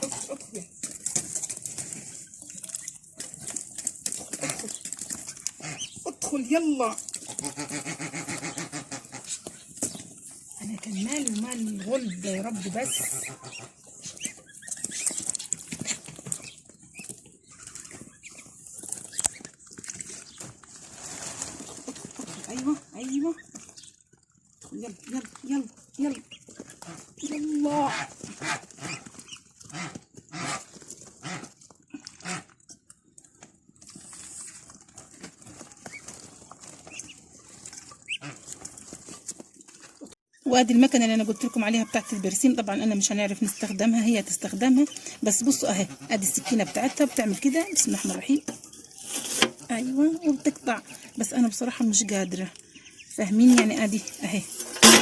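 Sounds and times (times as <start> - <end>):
ducks and geese calling: 0.0 - 6.3, 7.0 - 20.6, 26.0 - 32.6, 34.1 - 40.1, 43.4 - 55.0
duck and goose calls: 5.4 - 6.1, 7.2 - 9.6, 11.4 - 16.1, 26.2 - 32.6
ducks and geese flapping wings: 7.0 - 10.0, 26.1 - 32.5.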